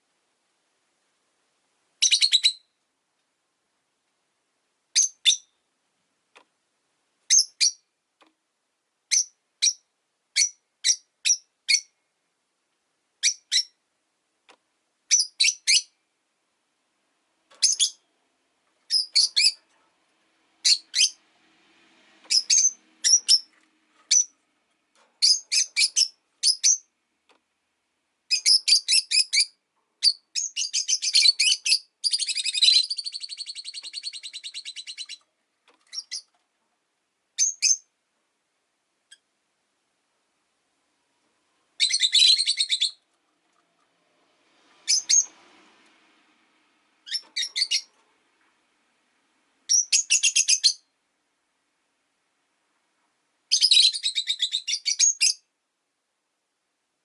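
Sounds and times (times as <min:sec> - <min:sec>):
lovebirds chirping: 0:02.0 - 0:02.8, 0:04.9 - 0:05.7, 0:07.3 - 0:07.9, 0:09.1 - 0:12.0, 0:13.2 - 0:13.8, 0:15.1 - 0:16.0, 0:17.6 - 0:18.1, 0:18.8 - 0:19.7, 0:20.6 - 0:21.2, 0:22.3 - 0:24.4, 0:25.2 - 0:27.0, 0:28.3 - 0:35.3, 0:35.9 - 0:36.3, 0:37.3 - 0:37.9, 0:41.8 - 0:43.1, 0:44.8 - 0:45.4, 0:47.0 - 0:47.9, 0:49.6 - 0:51.0, 0:53.5 - 0:55.5.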